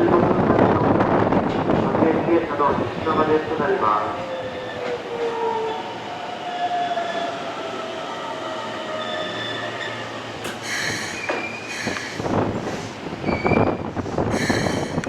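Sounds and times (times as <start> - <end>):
wheels and brakes squealing: 8.8 - 10.2, 13.2 - 13.8.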